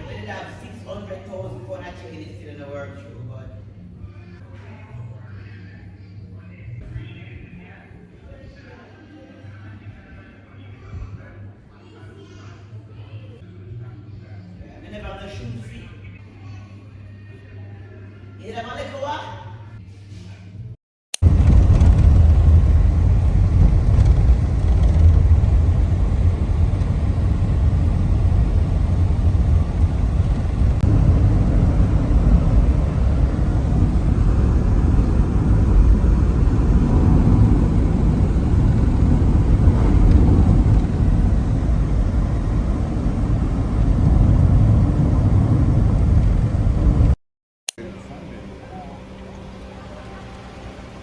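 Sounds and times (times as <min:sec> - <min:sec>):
wind and road noise in car: 0:21.2 - 0:47.2.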